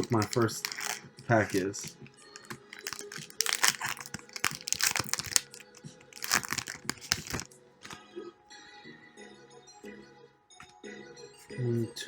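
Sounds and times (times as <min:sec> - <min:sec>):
foil wrapper crinkling and tearing: 0:00.0 - 0:08.0
faint background music: 0:00.0 - 0:12.0.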